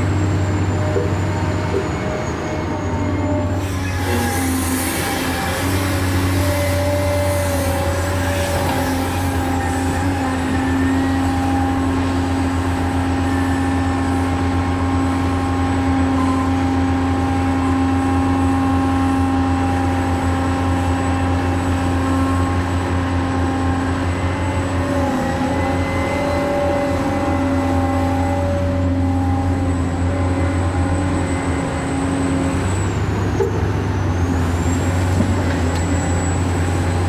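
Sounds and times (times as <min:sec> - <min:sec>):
model excavator motor droning: 0:00.0 - 0:37.0.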